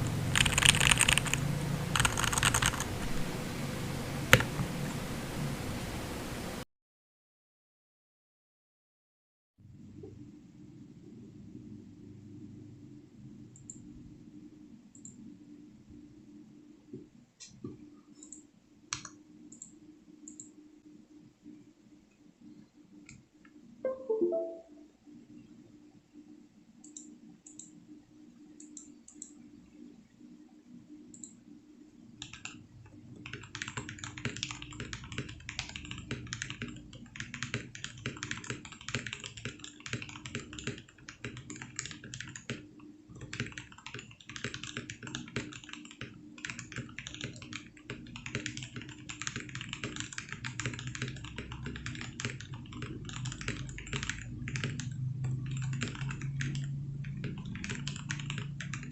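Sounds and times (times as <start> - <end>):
typing on mechanical keyboard: 0.3 - 2.9, 32.2 - 32.6, 33.2 - 58.9.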